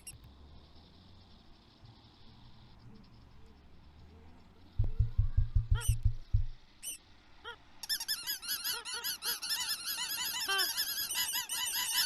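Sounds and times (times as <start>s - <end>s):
low thumps: 4.8s - 6.7s
cartoon bird calls: 5.7s - 6.1s, 6.8s - 12.0s.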